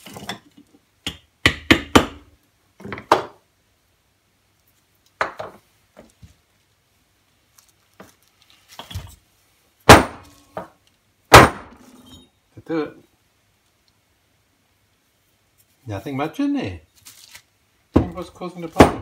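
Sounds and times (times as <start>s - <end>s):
sharp metal knocks: 11.3s - 11.8s.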